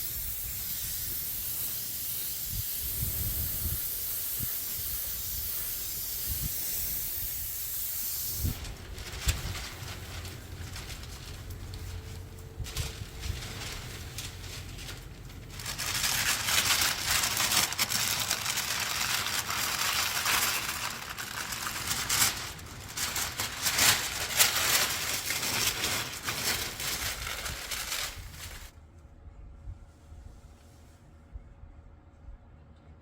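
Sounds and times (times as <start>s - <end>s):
paint spray gun hissing: 0.0s - 8.6s.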